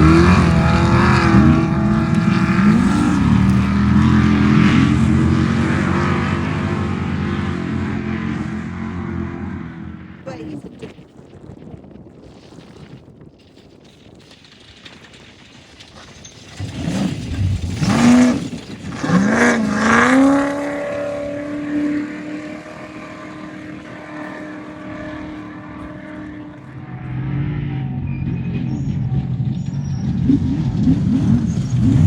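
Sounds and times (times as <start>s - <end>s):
race vehicle engine revving: 0.0s - 10.2s, 16.6s - 32.0s.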